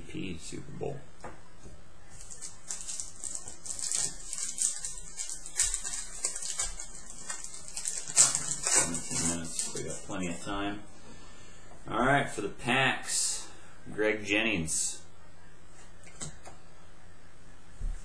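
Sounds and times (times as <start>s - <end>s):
cards rustling and sliding: 2.2s - 10.2s.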